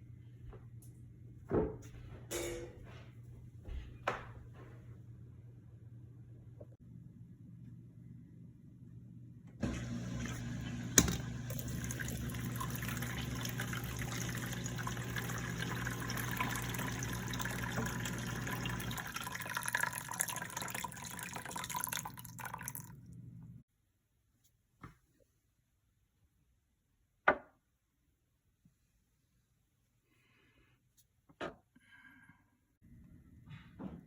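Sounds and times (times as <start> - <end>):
dishwasher pump motor humming: 9.6 - 21.2
dishwasher click: 10.6 - 11.4.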